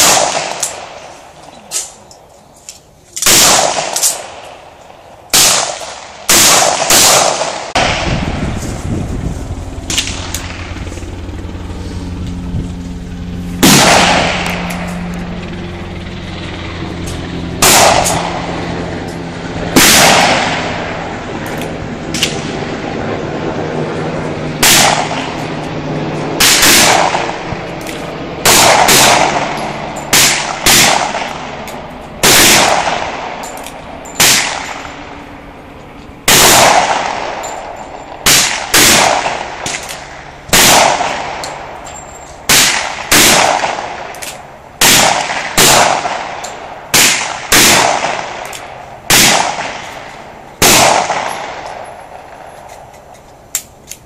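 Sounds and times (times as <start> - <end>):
handgun shots with ringing echo: 0.0 - 1.0, 3.2 - 4.7, 5.3 - 8.1, 17.6 - 18.5, 19.7 - 22.5, 24.6 - 25.4, 26.4 - 35.0, 36.3 - 41.7, 42.5 - 52.9.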